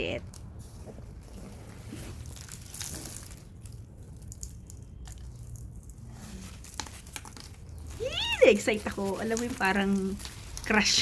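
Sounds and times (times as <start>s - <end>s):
packaging rustling and crinkling: 0.3s - 11.0s.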